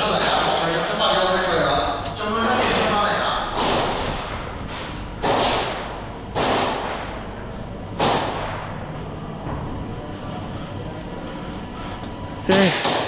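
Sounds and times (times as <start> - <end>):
airsoft gunshots in a hall: 2.3 - 9.1, 12.5 - 13.0.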